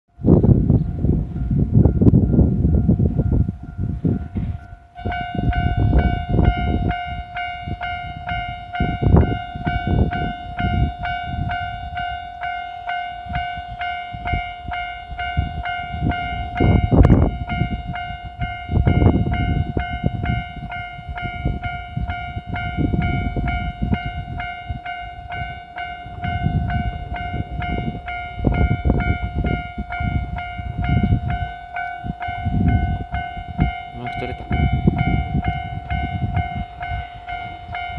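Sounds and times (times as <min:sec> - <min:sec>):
low rumbling gusts: 0:00.1 - 0:37.9
level crossing warning bell: 0:00.7 - 0:37.9.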